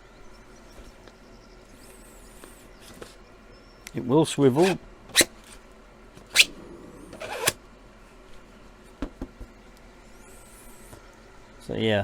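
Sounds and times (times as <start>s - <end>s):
plastic coupler scraping: 4.6s - 5.3s, 6.3s - 7.6s.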